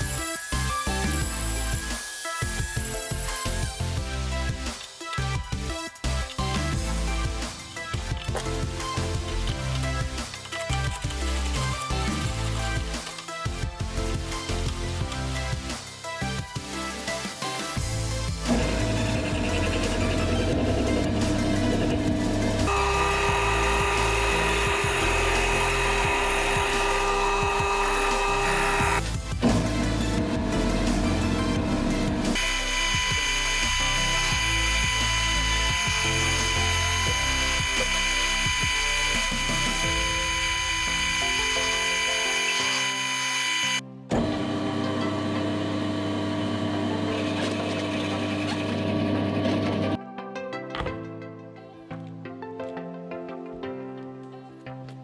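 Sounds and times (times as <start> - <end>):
small power tool whine: 0.0 - 4.2, 18.5 - 50.0
background music: 0.0 - 48.4, 49.9 - 55.0.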